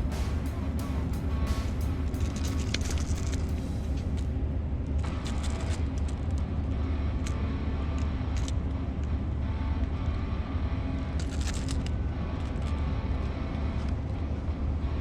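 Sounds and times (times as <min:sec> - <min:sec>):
low rumble: 0:00.0 - 0:15.0.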